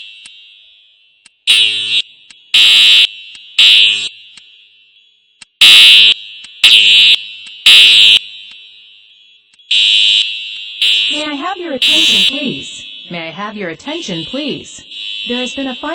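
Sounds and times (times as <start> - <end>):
fire alarm horn blasts: 0.0 - 15.9.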